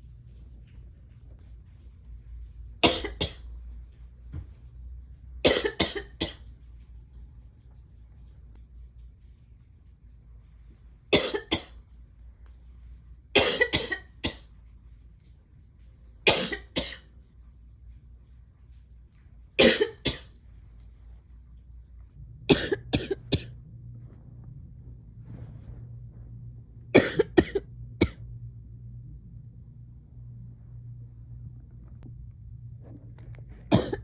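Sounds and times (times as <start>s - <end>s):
person coughing: 2.8s - 3.4s, 5.4s - 6.4s, 11.2s - 11.8s, 13.4s - 14.4s, 16.3s - 17.1s, 19.6s - 20.3s, 22.5s - 23.6s, 26.9s - 28.2s, 33.7s - 34.0s.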